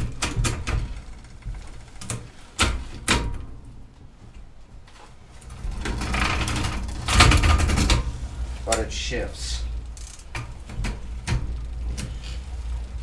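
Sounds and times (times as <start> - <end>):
bicycle chain running: 0.0 - 2.5, 5.4 - 13.0.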